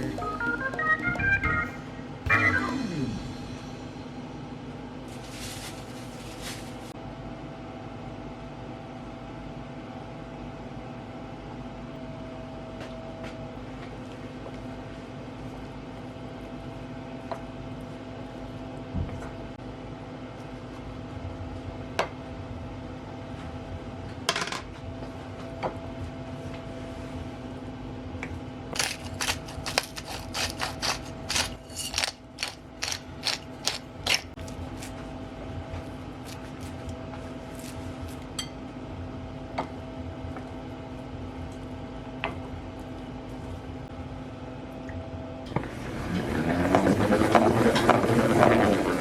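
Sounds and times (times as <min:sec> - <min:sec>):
kitchen appliance humming: 0:00.0 - 0:04.6, 0:28.7 - 0:38.0, 0:45.5 - 0:49.0
metallic clinks and scraping: 0:28.8 - 0:34.2.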